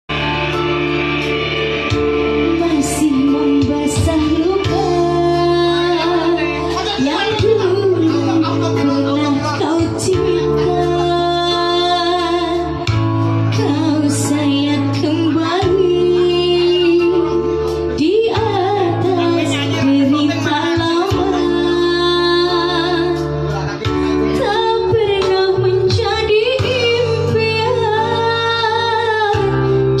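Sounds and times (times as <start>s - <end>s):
sustained bass notes: 0.0s - 30.0s
instrumental backing: 0.1s - 30.0s
woman singing with vibrato: 2.3s - 8.5s, 13.6s - 23.3s, 24.4s - 30.0s.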